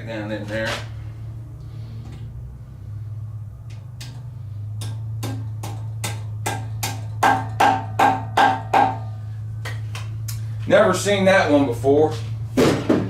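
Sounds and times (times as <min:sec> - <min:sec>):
hammer tapping metal: 0:04.8 - 0:09.2.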